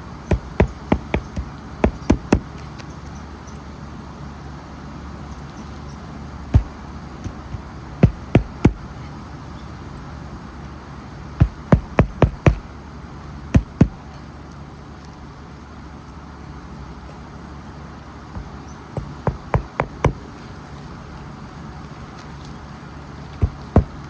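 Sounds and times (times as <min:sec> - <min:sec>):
steady low hum: 0:00.0 - 0:15.4, 0:16.3 - 0:24.0
hammer driving nails into shingles: 0:00.3 - 0:02.6, 0:06.6 - 0:08.9, 0:11.4 - 0:12.7, 0:13.6 - 0:14.1, 0:18.4 - 0:20.3, 0:23.4 - 0:24.0.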